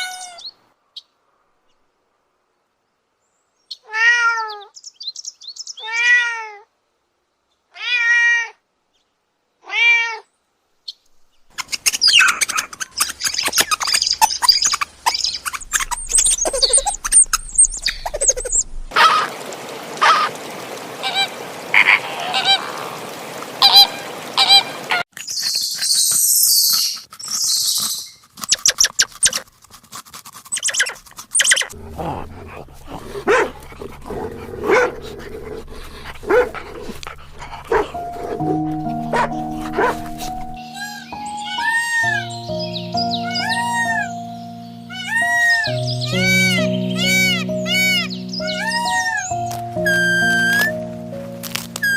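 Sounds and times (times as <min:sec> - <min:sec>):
jumble of clicks and chirps: 0:11.5 - 0:18.9, 0:25.1 - 0:29.5, 0:30.5 - 0:43.7
cat meowing: 0:40.8 - 0:42.3, 0:43.2 - 0:44.1, 0:44.9 - 0:48.0.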